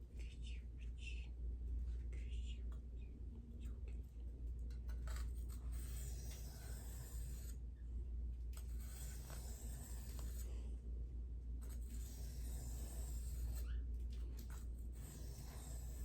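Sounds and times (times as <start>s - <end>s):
knife scraping on sharpening stone: 5.0s - 7.6s, 8.6s - 10.5s.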